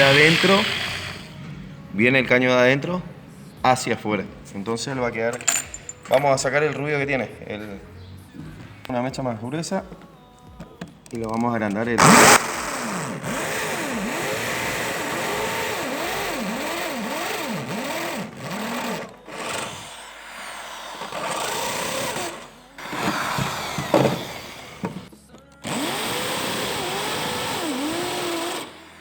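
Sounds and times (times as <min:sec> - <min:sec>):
electric drill drilling metal: 0:00.0 - 0:01.4, 0:12.0 - 0:29.0.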